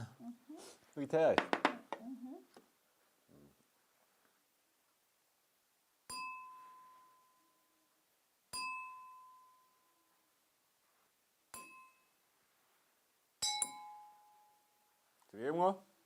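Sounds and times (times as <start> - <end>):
bright ringing ding: 6.1 - 7.6, 8.5 - 10.0, 13.4 - 14.7.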